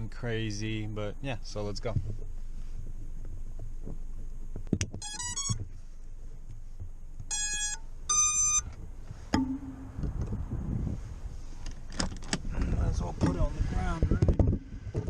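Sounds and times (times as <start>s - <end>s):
electronic motor beeps: 5.0s - 5.6s, 7.3s - 8.7s
handling clicks and rustle: 11.6s - 12.5s.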